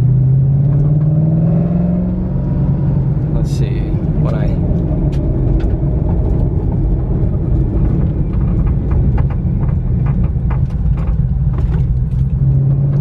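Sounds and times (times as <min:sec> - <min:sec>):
car engine roaring through exhaust: 0:00.0 - 0:13.0.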